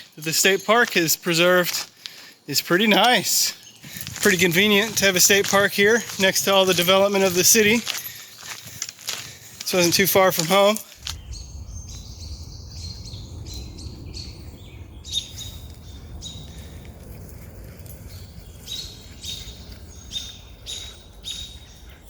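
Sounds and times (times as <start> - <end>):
small songbirds chirping: 0.0 - 17.2, 17.9 - 22.0
steady low rumble: 11.0 - 22.0.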